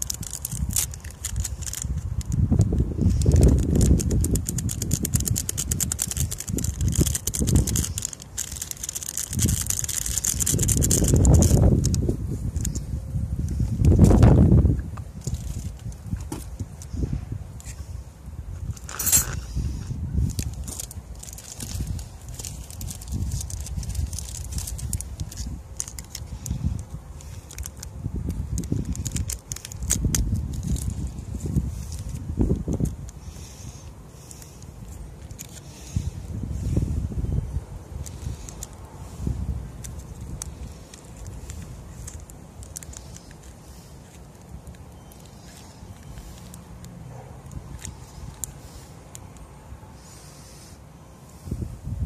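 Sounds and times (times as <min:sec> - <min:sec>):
rapid crackle of high clicks: 0:00.0 - 0:12.0, 0:39.8 - 0:49.4
sharp clicks and crackles: 0:00.0 - 0:17.0, 0:18.7 - 0:36.7, 0:38.0 - 0:49.5
wind buffeting microphone: 0:00.0 - 0:33.8, 0:34.4 - 0:43.9, 0:51.3 - 0:52.0.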